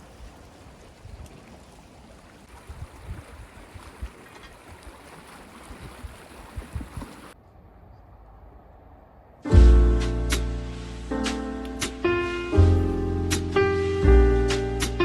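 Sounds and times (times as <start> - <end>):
sea waves at shore: 0.0 - 7.4
wind on microphone: 2.5 - 4.8, 5.6 - 7.4.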